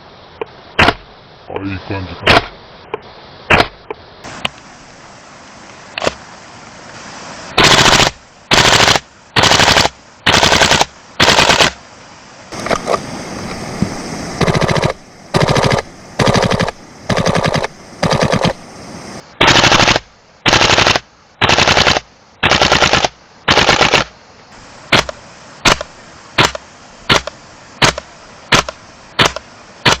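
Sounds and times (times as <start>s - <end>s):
airsoft rifle firing: 0.8s - 1.0s, 3.5s - 3.8s, 7.6s - 11.8s, 14.4s - 18.6s, 19.4s - 24.1s, 24.9s - 30.0s.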